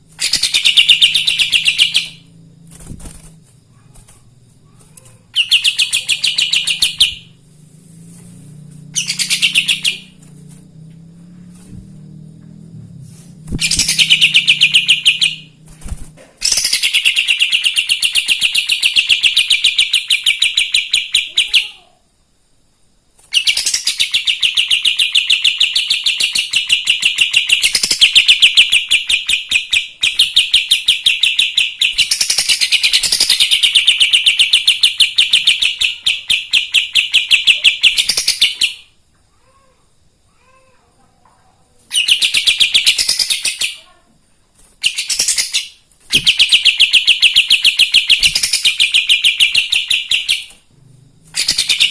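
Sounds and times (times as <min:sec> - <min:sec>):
songbird chattering trill: 0:05.3 - 0:07.4, 0:09.0 - 0:10.1.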